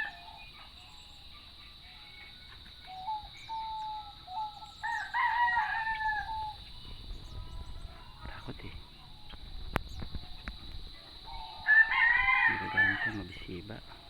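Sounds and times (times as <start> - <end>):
rooster crowing: 0.0 - 0.4, 4.6 - 6.6, 11.3 - 13.3.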